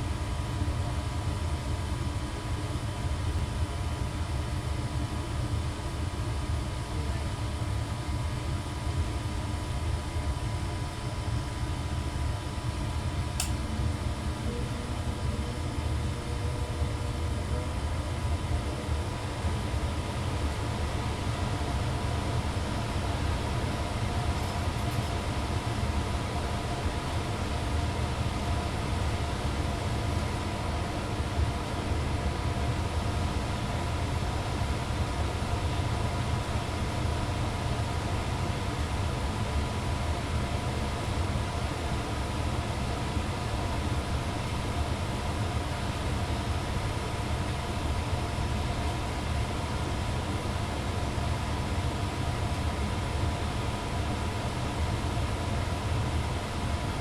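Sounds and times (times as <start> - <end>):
furnace blower humming: 0.0 - 57.0
faint steady tones: 13.4 - 30.7.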